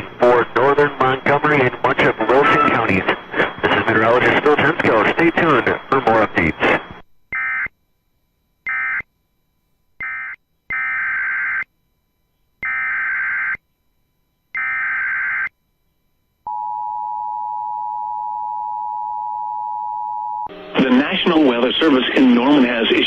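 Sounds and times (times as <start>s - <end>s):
digital data tone bursts: 2.2s - 3.0s.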